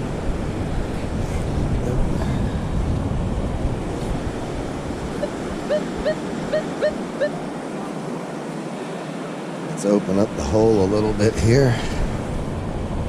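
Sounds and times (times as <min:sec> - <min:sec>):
wind buffeting microphone: 0:00.0 - 0:08.4, 0:10.2 - 0:13.0
surf: 0:00.0 - 0:13.0
metal detector beeping: 0:05.2 - 0:07.3.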